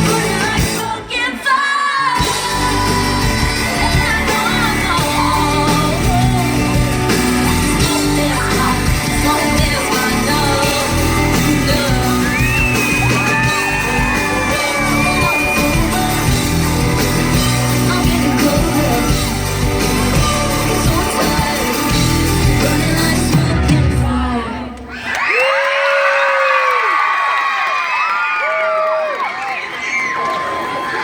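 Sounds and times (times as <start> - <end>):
live pop band: 0.0 - 25.2
audience yelling: 9.9 - 17.8, 23.5 - 31.0.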